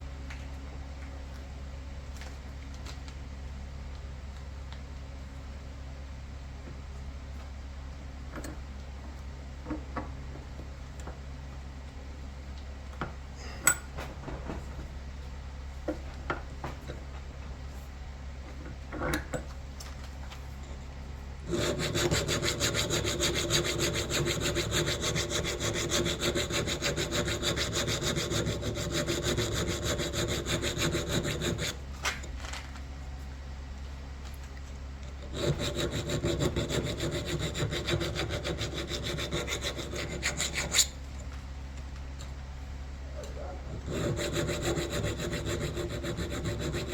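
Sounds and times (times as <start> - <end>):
metal file rasping on steel blade: 21.4 - 31.8, 35.2 - 41.0, 43.7 - 46.9.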